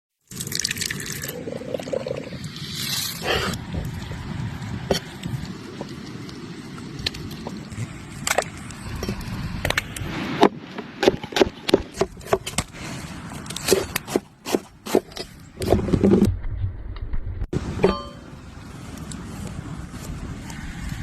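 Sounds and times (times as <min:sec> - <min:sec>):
low rumble: 0:16.2 - 0:21.0.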